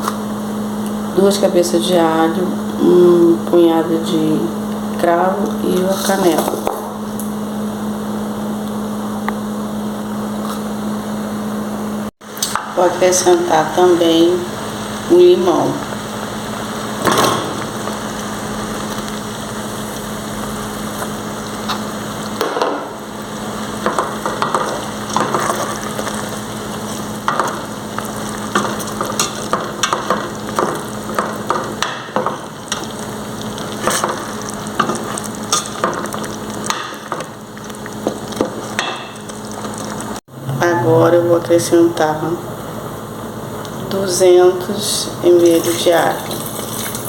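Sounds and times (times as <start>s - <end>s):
syrup sizzling in a pan: 12.2s - 40.2s
low steady hum: 39.1s - 47.0s.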